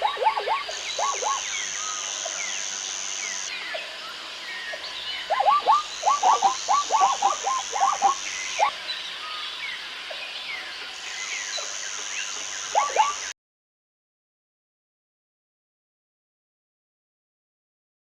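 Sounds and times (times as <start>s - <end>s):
zebra yelping calls: 0.0s - 2.2s, 5.3s - 8.7s
high steady buzz: 0.0s - 8.8s
birds chirping: 0.0s - 13.3s.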